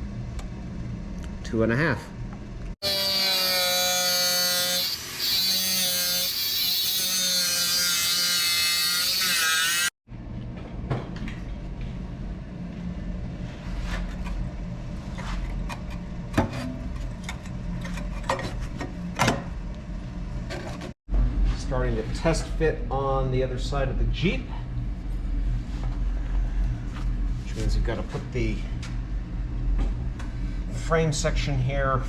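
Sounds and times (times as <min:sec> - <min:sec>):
power tool cutting sheet metal: 0:02.8 - 0:10.0.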